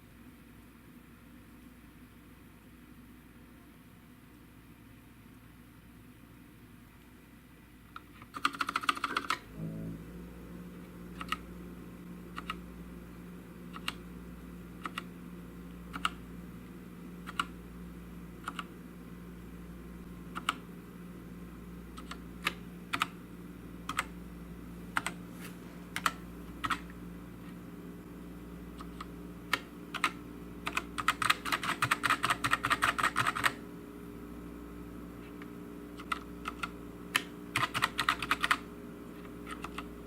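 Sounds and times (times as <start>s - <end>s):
steady low hum: 9.2s - 40.0s.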